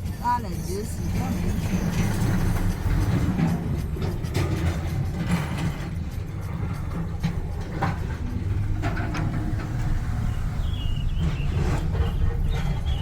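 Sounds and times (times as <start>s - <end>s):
knocks and rattles: 0.0s - 13.0s
vehicle road rumble: 0.0s - 13.0s.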